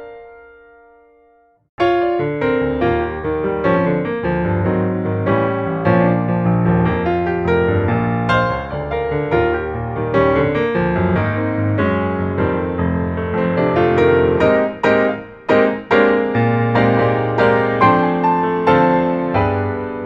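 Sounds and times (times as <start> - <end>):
piano music: 0.0 - 20.0.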